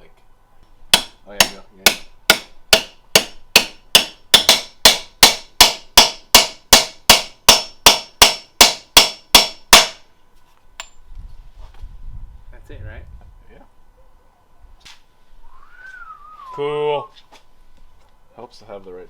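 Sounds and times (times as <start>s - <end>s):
hammer tapping on metal: 0.9s - 10.0s.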